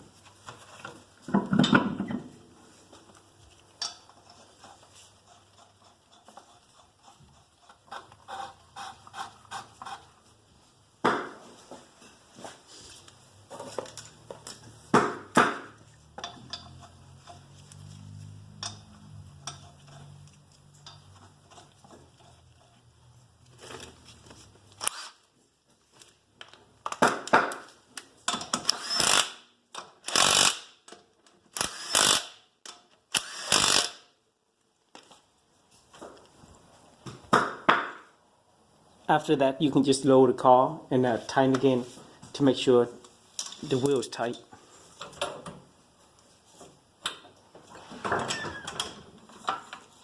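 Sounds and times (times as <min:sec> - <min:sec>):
power tool bursts: 0:24.8 - 0:25.2, 0:28.6 - 0:29.4, 0:30.1 - 0:30.7, 0:31.6 - 0:32.4, 0:33.1 - 0:34.0.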